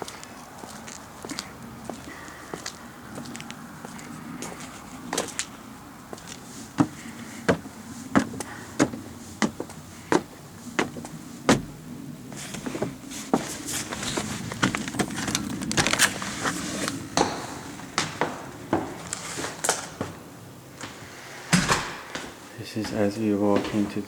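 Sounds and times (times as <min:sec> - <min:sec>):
footsteps on a hard surface: 0:00.0 - 0:05.5, 0:06.1 - 0:20.2, 0:20.8 - 0:21.0, 0:22.1 - 0:24.0
rustling and clattering handling: 0:12.3 - 0:17.3.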